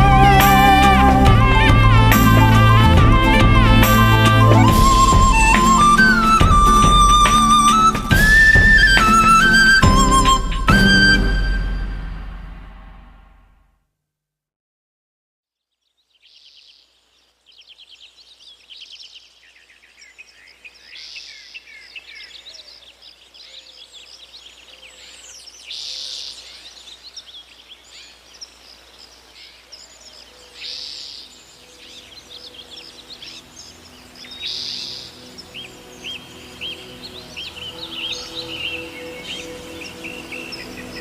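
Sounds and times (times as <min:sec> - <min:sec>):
birds chirping and trilling: 0:00.0 - 0:13.1, 0:15.8 - 0:41.0
faint sustained musical notes: 0:00.0 - 0:13.4, 0:31.3 - 0:41.0.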